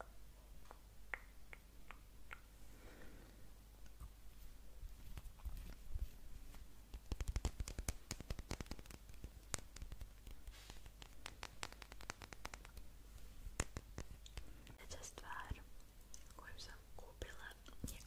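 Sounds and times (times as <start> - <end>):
sharp taps and clicks: 6.9 - 12.9, 13.5 - 14.8.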